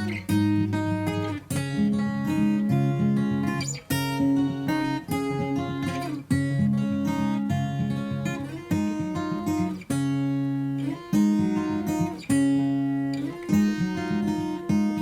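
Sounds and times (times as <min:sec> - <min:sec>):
acoustic guitar playing: 0:00.0 - 0:15.0.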